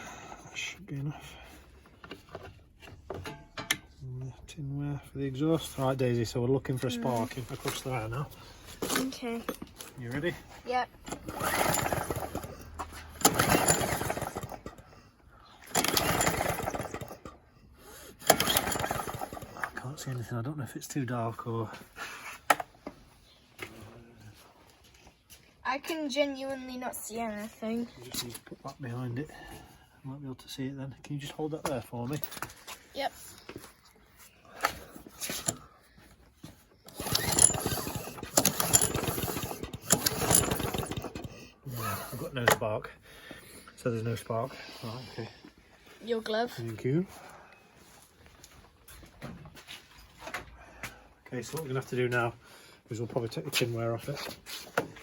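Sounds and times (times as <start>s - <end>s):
lawn mower recoil starter pulls: 11.0s - 14.8s, 15.6s - 17.4s, 18.1s - 19.9s, 35.2s - 35.6s, 36.8s - 41.4s
engine turning over not firing: 11.1s - 14.8s, 15.7s - 17.3s, 18.2s - 19.7s, 36.9s - 41.5s.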